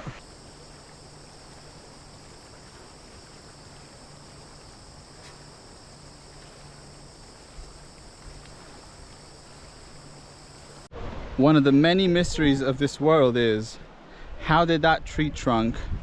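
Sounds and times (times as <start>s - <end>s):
insects chirring: 0.2s - 10.9s.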